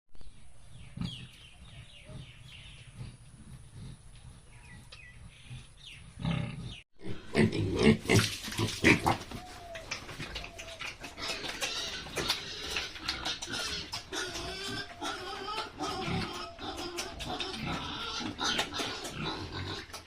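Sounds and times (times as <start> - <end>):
pigs grunting: 0.8 - 20.0
pigs squealing: 6.2 - 20.0.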